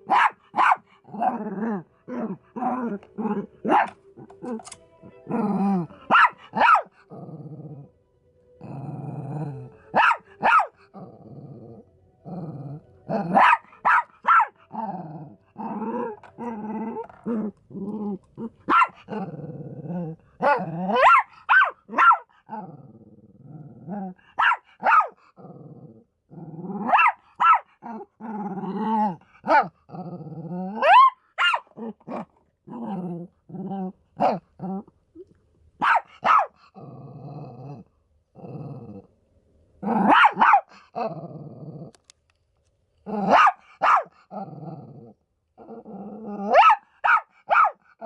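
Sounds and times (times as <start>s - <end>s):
dog barking: 0.0s - 0.9s, 3.6s - 4.0s, 6.0s - 6.9s, 9.9s - 10.8s, 13.2s - 14.6s, 18.7s - 19.1s, 20.4s - 22.3s, 24.4s - 25.2s, 26.9s - 27.8s, 30.8s - 31.7s, 35.8s - 36.6s, 40.0s - 40.7s, 43.2s - 44.2s, 46.5s - 47.8s
dog growling: 1.0s - 6.1s, 7.0s - 7.9s, 8.6s - 9.8s, 10.9s - 13.5s, 14.6s - 21.0s, 22.4s - 24.4s, 25.2s - 27.0s, 27.8s - 30.9s, 31.7s - 35.3s, 36.7s - 39.1s, 40.8s - 42.0s, 44.2s - 46.6s.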